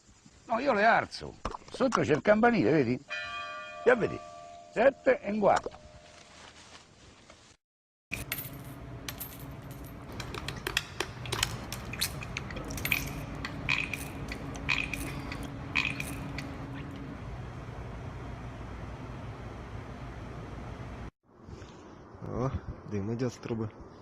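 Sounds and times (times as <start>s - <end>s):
metallic clinks and taps: 8.1s - 16.7s
steady low hum: 8.2s - 21.1s.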